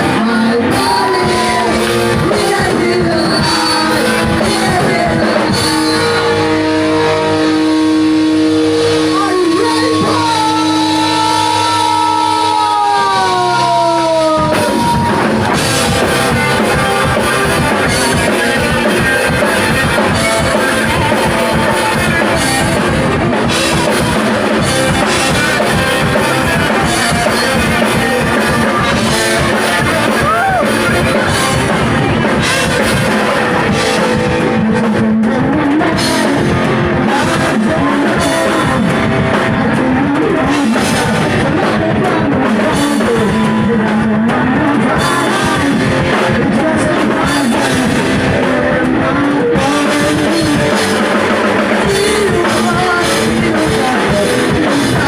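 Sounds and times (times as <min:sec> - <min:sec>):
rock band playing live: 0:00.0 - 0:55.0.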